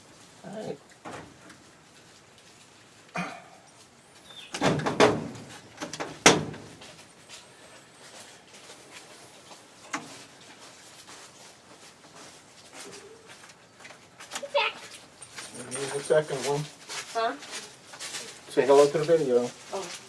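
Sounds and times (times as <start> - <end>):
loud knocks and clattering bangs: 4.5 - 6.8.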